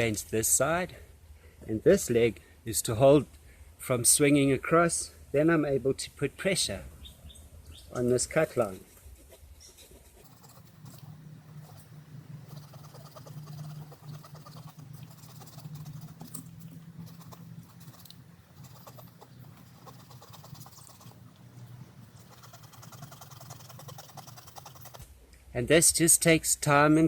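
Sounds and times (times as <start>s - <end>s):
low steady hum: 8.9s - 25.6s
saw rasping through wooden stick: 10.2s - 21.3s, 22.1s - 25.1s.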